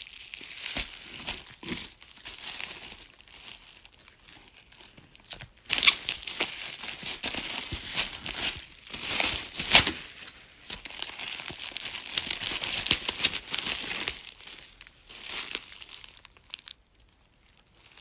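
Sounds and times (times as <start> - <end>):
packaging crinkling and rustling: 0.0 - 18.0.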